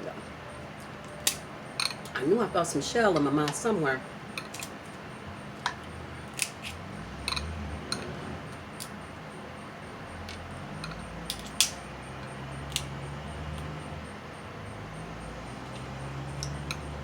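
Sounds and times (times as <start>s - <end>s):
crab shells cracking: 6.3s - 6.8s.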